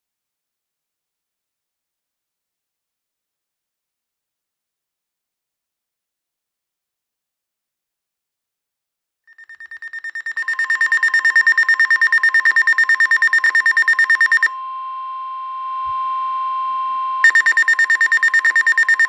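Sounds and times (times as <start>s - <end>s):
rapid high beeping: 9.3s - 15.2s, 16.4s - 19.0s
steady alert tone: 10.0s - 19.0s.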